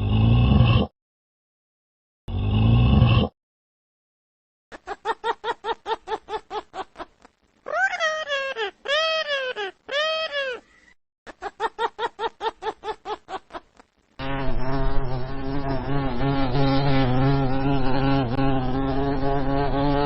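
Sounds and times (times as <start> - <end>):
steady insect-like buzzing: 14.2 - 19.2
low hum: 14.2 - 19.8.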